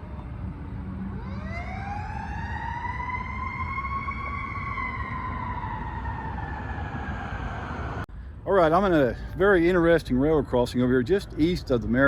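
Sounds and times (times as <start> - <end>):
fire truck siren wailing: 0.8 - 8.1.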